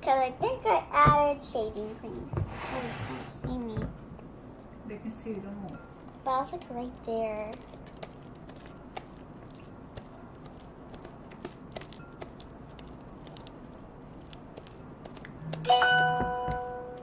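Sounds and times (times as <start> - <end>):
slime kneaded by hand: 6.0 - 17.0
bright ringing tone: 15.6 - 17.0.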